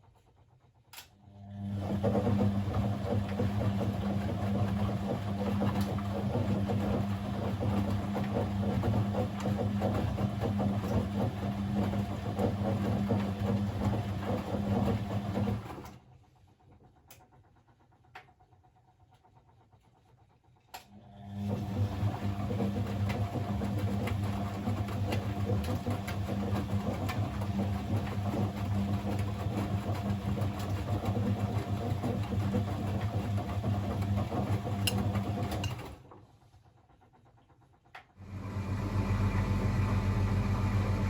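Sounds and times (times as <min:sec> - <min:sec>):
washing machine drum humming: 0:01.6 - 0:16.0, 0:21.3 - 0:36.1, 0:38.2 - 0:41.0.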